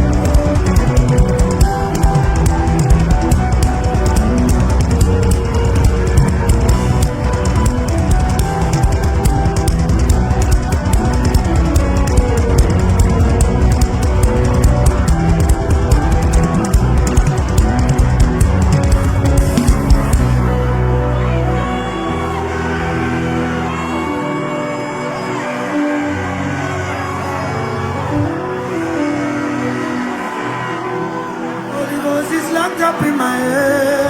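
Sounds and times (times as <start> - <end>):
busy drum beat: 0.0 - 20.4
instrumental band music: 0.0 - 27.1.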